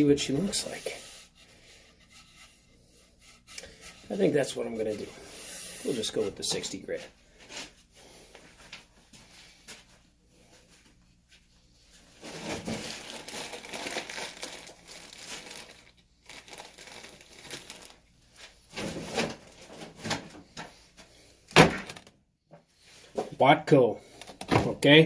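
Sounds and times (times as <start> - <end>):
crinkling rustling handling noise: 11.9 - 20.8.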